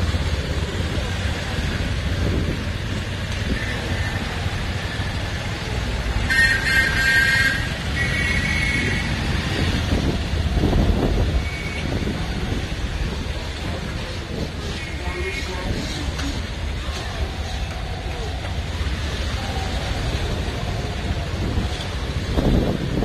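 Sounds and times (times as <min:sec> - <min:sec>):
road traffic rumbling: 0:00.0 - 0:23.0
vehicle horn: 0:06.2 - 0:09.3.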